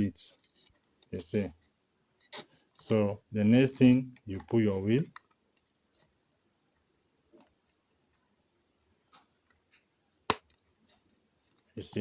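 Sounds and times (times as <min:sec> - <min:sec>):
faint taps of small parts: 0:04.1 - 0:08.3, 0:09.0 - 0:12.0.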